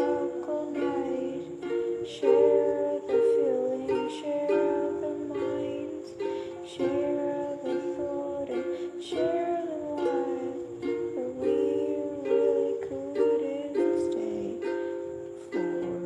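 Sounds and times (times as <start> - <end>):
acoustic string instrument strumming: 0.0 - 16.0.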